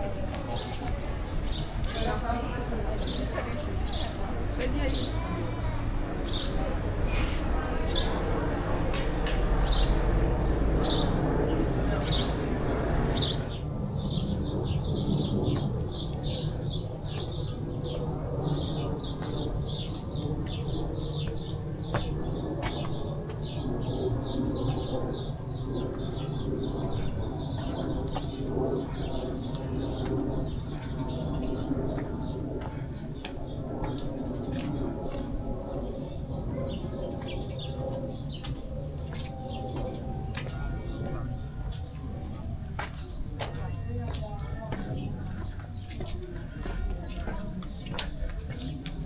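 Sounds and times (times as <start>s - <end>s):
small birds chirping: 10.8s - 28.4s.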